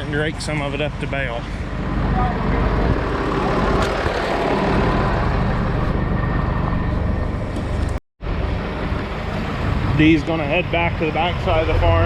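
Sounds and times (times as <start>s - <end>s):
tractor engine running: 8.7s - 11.9s.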